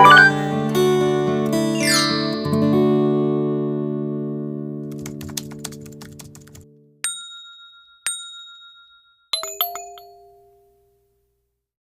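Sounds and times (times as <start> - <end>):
chime notes: 0.0 - 0.4.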